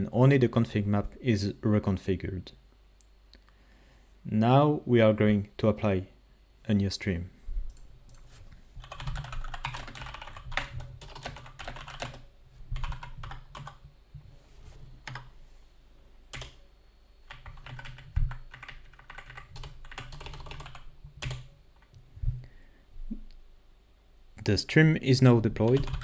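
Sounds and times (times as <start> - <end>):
typing on computer keyboard: 8.8 - 13.8, 15.0 - 15.3, 16.3 - 16.6, 17.3 - 21.5, 25.6 - 26.0.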